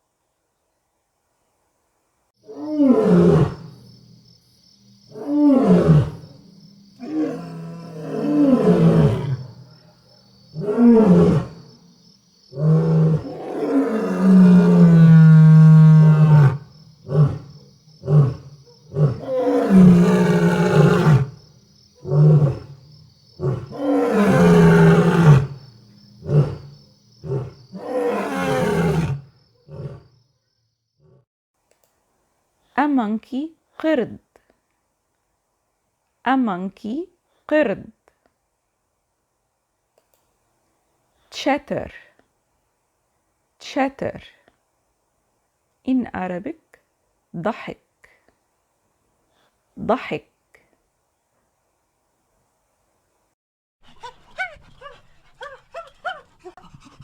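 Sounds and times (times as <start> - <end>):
lion roaring and grunting: 7.0 - 9.5, 12.6 - 21.3, 23.4 - 25.6, 26.2 - 30.1.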